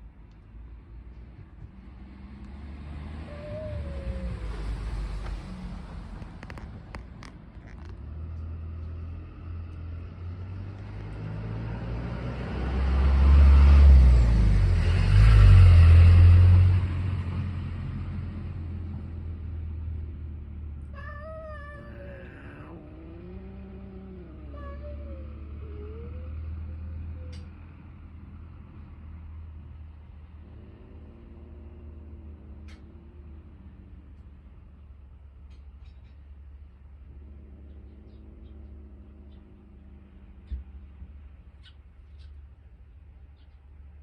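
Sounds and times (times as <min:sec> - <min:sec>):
passing vehicle rumble: 0:00.0 - 0:44.0
cats yowling: 0:03.2 - 0:04.9, 0:20.9 - 0:27.6, 0:30.5 - 0:34.3, 0:37.1 - 0:40.8
cat growling: 0:03.2 - 0:05.1, 0:20.8 - 0:27.6, 0:30.2 - 0:34.9, 0:36.9 - 0:41.0.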